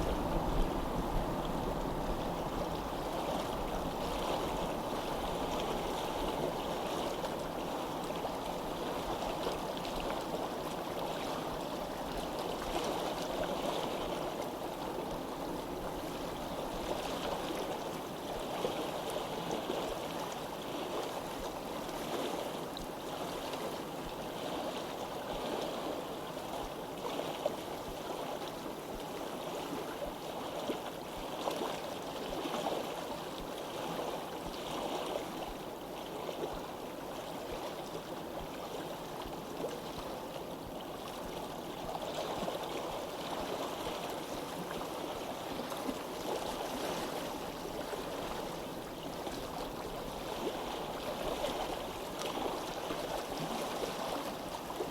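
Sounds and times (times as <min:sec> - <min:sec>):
stream of water flowing: 0:00.0 - 0:54.9
small water splashes: 0:37.4 - 0:54.9.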